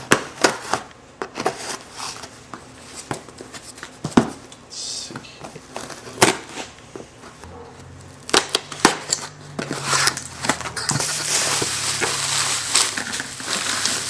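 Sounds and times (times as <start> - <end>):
plastic rustling and crinkling: 8.6 - 14.0.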